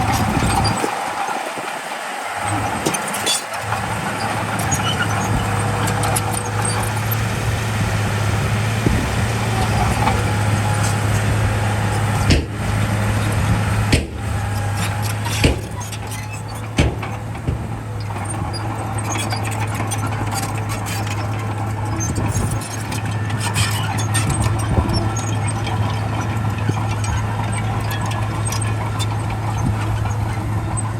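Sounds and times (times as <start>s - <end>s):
bulldozer diesel engine running: 0.0s - 30.9s
sharp metallic knocks: 12.0s - 21.2s.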